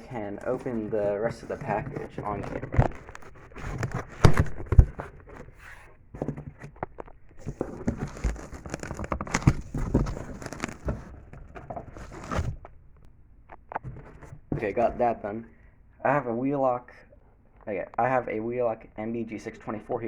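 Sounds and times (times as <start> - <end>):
packing material rustling and tearing: 0.0 - 12.7.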